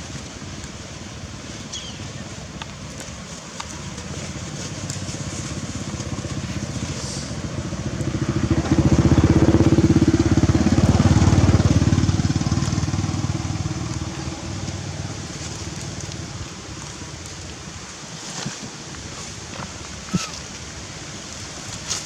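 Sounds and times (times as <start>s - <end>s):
vehicle engine passing by: 4.4s - 16.5s.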